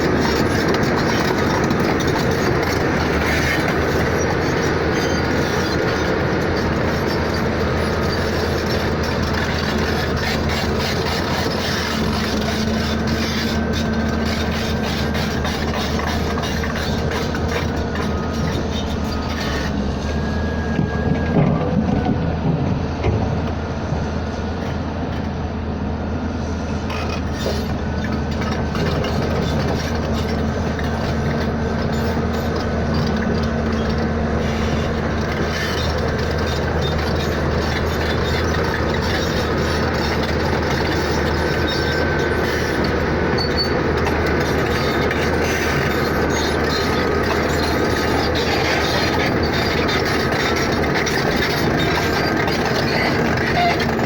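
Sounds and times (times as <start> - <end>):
moving vehicle rumble: 0.0 - 54.0
road noise: 0.0 - 54.0.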